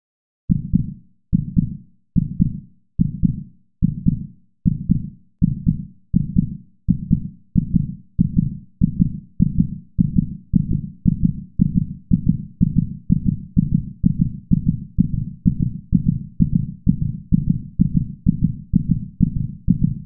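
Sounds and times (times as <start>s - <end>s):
heartbeat thumps: 0.5s - 20.0s.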